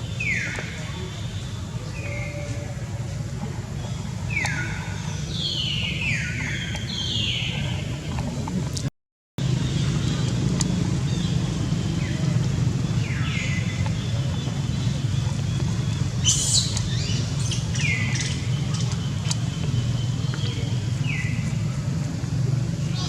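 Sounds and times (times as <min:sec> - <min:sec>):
steady low hum: 0:02.6 - 0:09.6.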